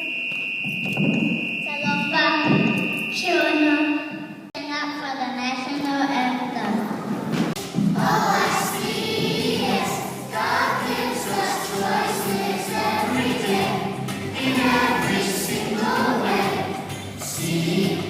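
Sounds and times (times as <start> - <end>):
children singing in unison: 7.9 - 18.0.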